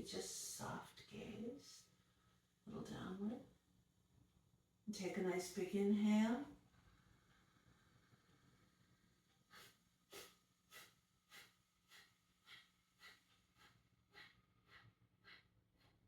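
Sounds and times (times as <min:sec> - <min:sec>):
forceful exhales through the nose: 0:09.5 - 0:14.3.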